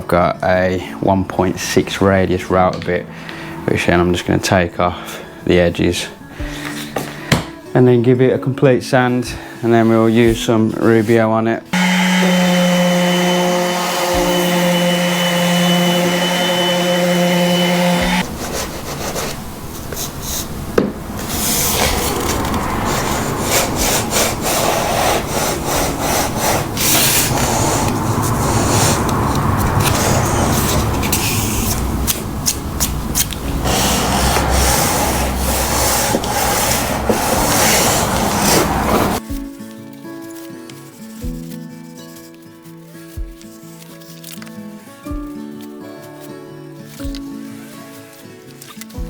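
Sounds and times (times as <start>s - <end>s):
power tool motor humming: 11.8s - 39.2s
rubbing and scraping on wooden board: 11.8s - 39.2s.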